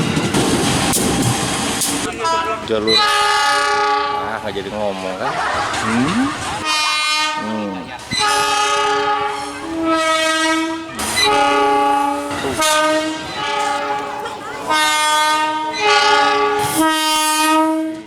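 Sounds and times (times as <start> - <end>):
train horn blasts: 2.0 - 4.7, 6.6 - 18.0.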